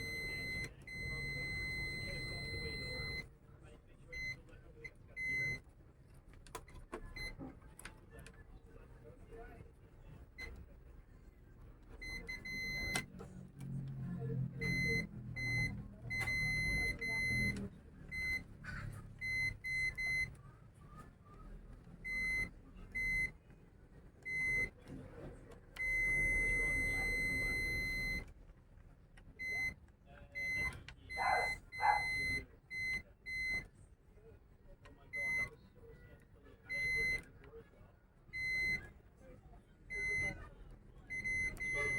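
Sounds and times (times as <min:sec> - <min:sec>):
multimeter long beep: 0:00.0 - 0:03.2, 0:14.6 - 0:18.4, 0:25.8 - 0:28.2, 0:41.1 - 0:41.9
multimeter short beeps: 0:00.0 - 0:03.2, 0:14.6 - 0:18.4, 0:25.8 - 0:28.3, 0:36.7 - 0:37.2, 0:39.9 - 0:40.4, 0:41.1 - 0:41.9.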